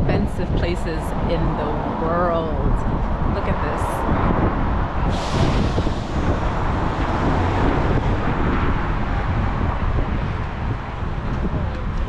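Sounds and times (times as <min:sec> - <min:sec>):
moving bus rumble: 0:00.0 - 0:12.0
street traffic: 0:00.0 - 0:12.0
wind buffeting microphone: 0:00.0 - 0:12.0.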